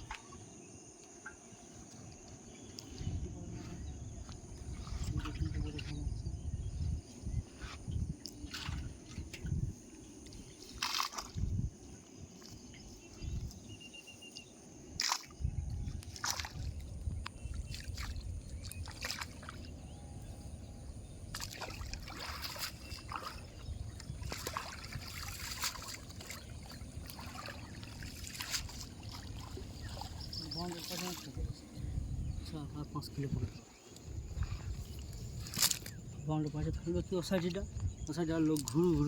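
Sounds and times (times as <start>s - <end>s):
water sloshing and trickling: 0.0s - 39.0s
sharp splashes: 10.7s - 11.4s, 15.0s - 15.4s, 16.2s - 16.7s, 17.7s - 19.7s, 21.3s - 31.4s.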